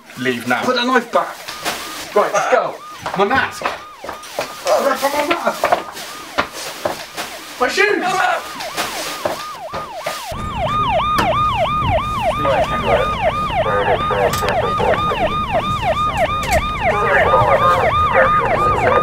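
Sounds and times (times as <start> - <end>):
emergency siren yelping: 0.0 - 19.0
low rumble: 10.3 - 16.4.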